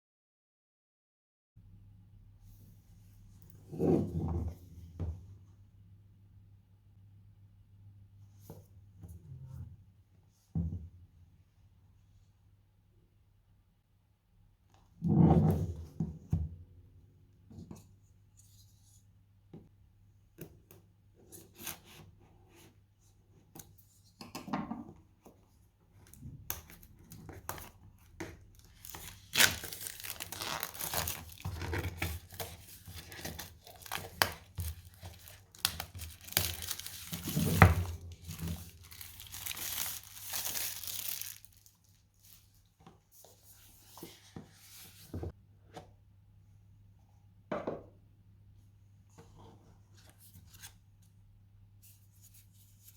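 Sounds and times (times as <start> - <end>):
packaging tearing and crinkling: 28.6 - 41.8.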